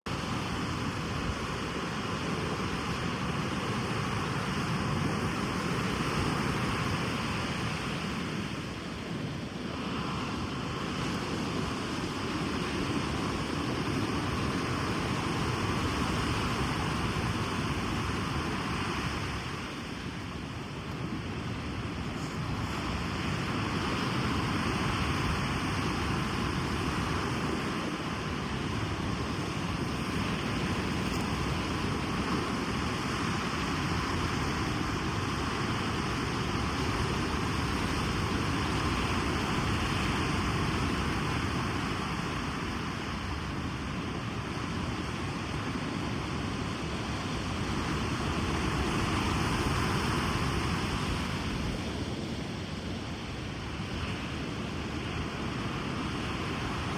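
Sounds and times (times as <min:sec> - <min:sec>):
waves breaking on beach: 0:00.1 - 0:56.9.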